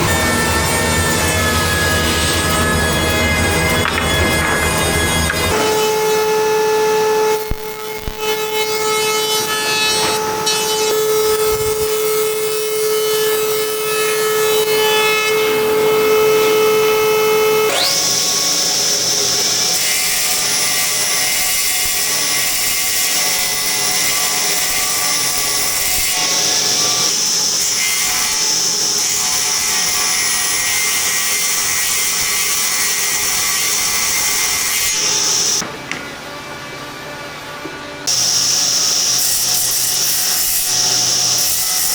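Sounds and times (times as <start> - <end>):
power tool hum and whine: 15.2 - 35.7, 38.1 - 41.9.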